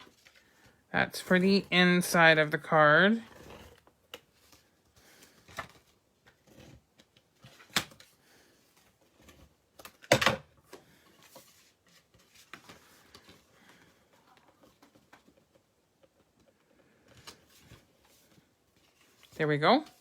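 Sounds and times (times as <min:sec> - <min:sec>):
faint rustling of cardstock: 0:10.9 - 0:15.7, 0:16.4 - 0:20.0.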